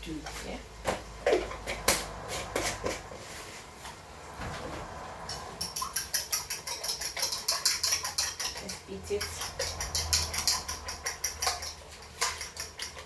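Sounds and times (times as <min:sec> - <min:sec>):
fork clicking against bowl: 0:05.3 - 0:13.0.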